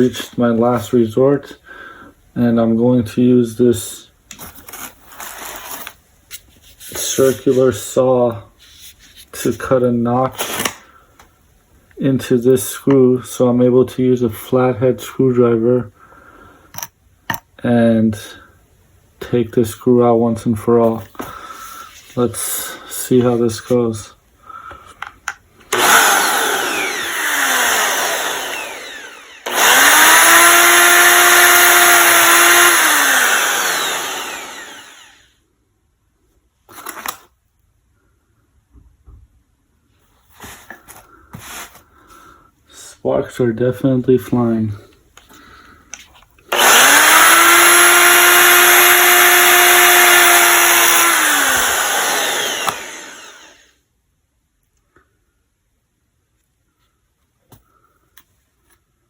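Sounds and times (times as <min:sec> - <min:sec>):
rotary tool whining and grinding: 0:25.7 - 0:35.4, 0:46.5 - 0:53.8.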